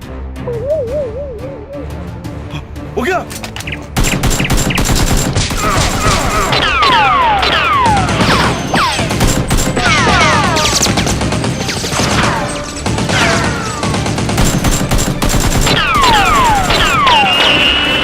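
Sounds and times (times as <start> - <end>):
falling whistling tones: 0.5 - 2.0
automatic gunfire: 4.0 - 18.0.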